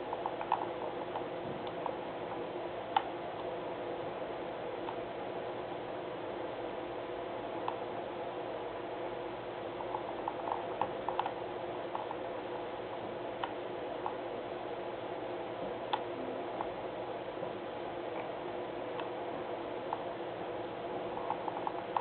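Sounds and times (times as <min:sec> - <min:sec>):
steady background hum: 0:00.0 - 0:22.0
computer mouse clicks: 0:00.1 - 0:02.0, 0:09.8 - 0:12.1.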